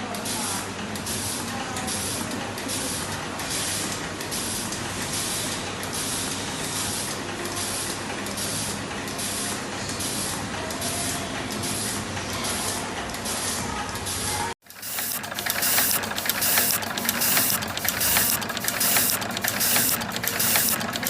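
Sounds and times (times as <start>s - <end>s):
machine humming: 14.6s - 21.0s.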